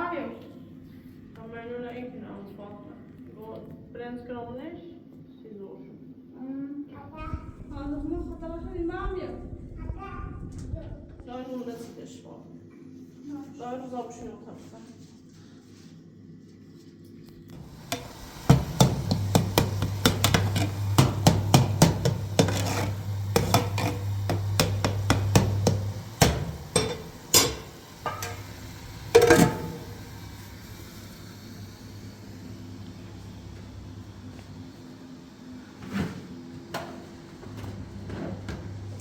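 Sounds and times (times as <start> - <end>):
steady low hum: 17.5 - 35.8.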